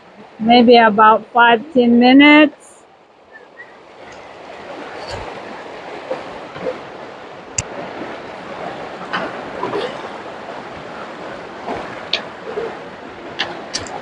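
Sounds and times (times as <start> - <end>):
river rushing over stones: 3.8 - 14.0.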